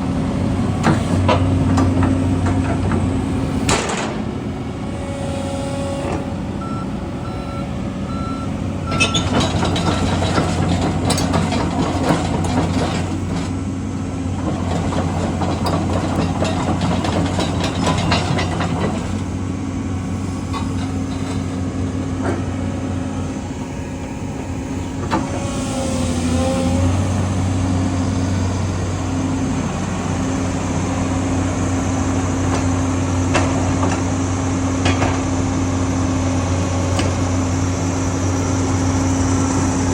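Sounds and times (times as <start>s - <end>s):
excavator engine running: 0.0s - 39.9s
machine clanks and knocks: 0.8s - 4.4s, 8.9s - 13.6s, 14.3s - 19.4s, 20.1s - 22.6s, 30.6s - 34.2s, 34.8s - 35.4s.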